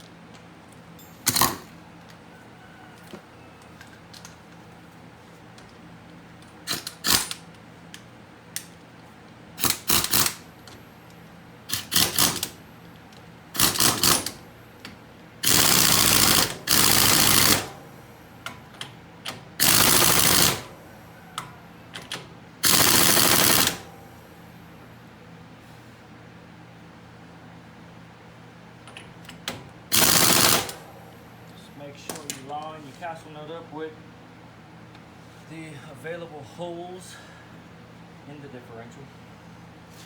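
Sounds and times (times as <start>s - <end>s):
impact wrench hammering: 29.9s - 30.8s.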